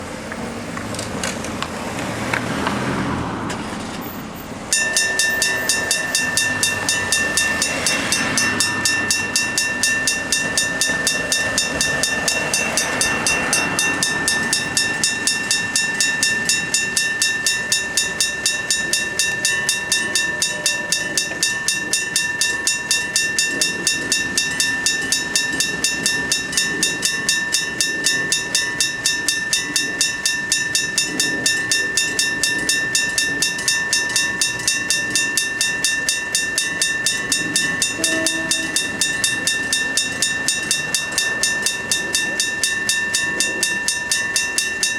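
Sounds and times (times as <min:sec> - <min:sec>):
level crossing bells ringing: 0:04.1 - 0:44.9.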